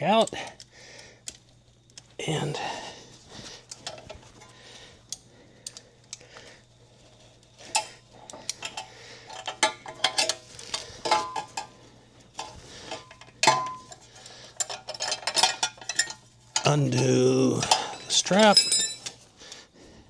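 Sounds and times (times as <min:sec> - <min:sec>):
faint steady hum: 0:00.0 - 0:20.0
metal tools clinking and rattling: 0:03.6 - 0:04.6, 0:07.5 - 0:19.3.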